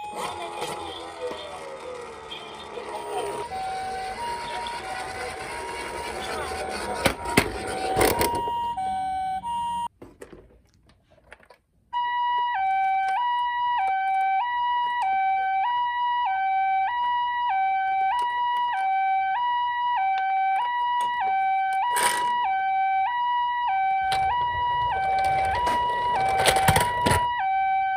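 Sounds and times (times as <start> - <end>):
toy electronic siren two-tone: 0.0 - 9.9, 12.0 - 27.9.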